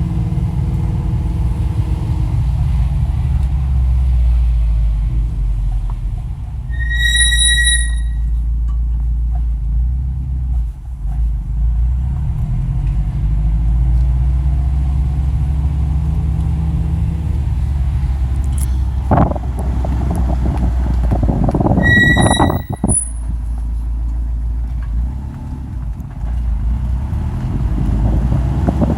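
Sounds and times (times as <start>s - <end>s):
car engine rumble: 0.0s - 28.9s
brake pads squealing: 5.7s - 8.5s, 16.9s - 23.8s.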